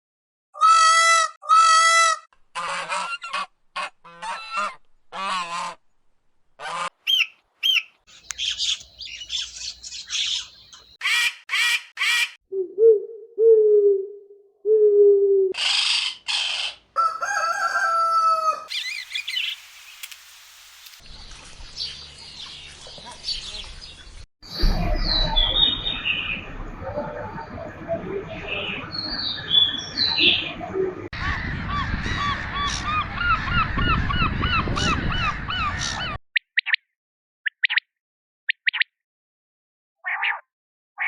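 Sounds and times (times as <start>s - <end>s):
bird squawks chirps and song: 7.1s - 12.4s, 18.7s - 19.6s, 40.0s - 40.4s.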